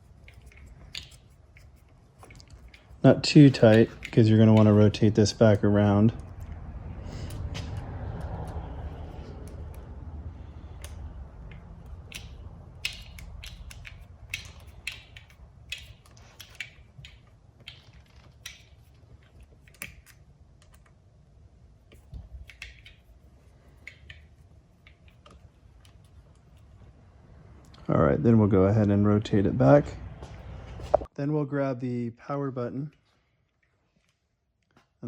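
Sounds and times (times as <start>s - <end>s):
wrench clicking on metal screws: 10.8s - 18.8s.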